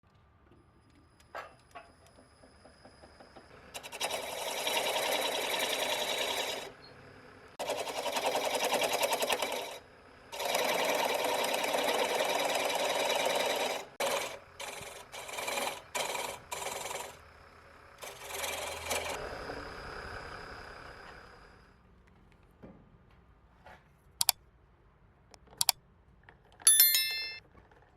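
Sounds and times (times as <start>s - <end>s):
woodworking power tool rattling: 3.8s - 6.8s, 7.6s - 17.2s, 18.0s - 19.4s.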